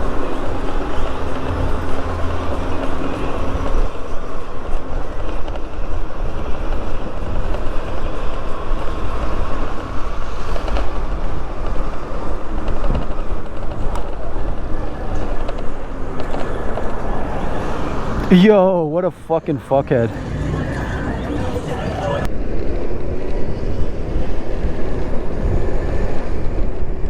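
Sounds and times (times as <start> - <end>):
wind rushing: 0.0 - 18.4
traffic noise: 0.0 - 27.0.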